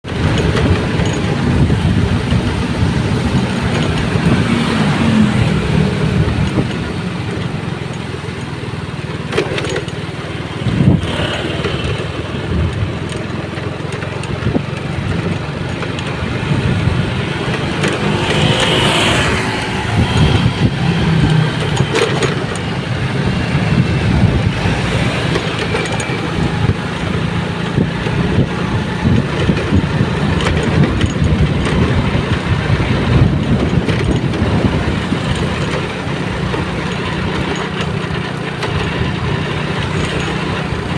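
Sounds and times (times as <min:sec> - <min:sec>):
strong wind on microphone: 0:00.0 - 0:07.3, 0:10.6 - 0:13.0, 0:14.3 - 0:36.8.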